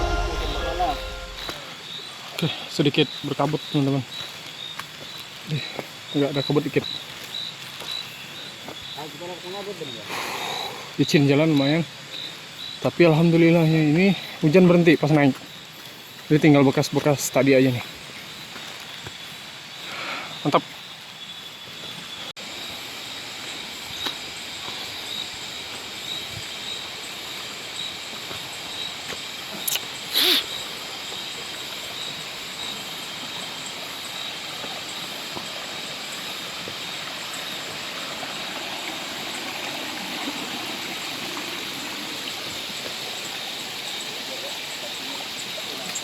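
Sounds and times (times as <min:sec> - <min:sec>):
short sharp sounds: 0:00.0 - 0:01.6
faint high steady tone: 0:00.0 - 0:01.7.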